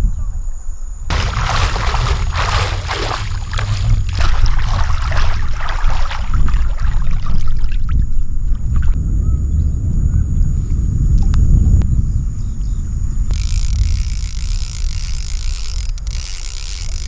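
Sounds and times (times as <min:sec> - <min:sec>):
water splashing and sloshing: 0:01.1 - 0:09.0.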